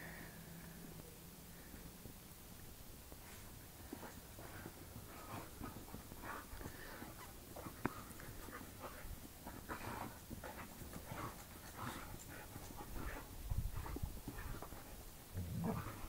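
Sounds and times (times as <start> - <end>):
dog panting: 3.2 - 16.0.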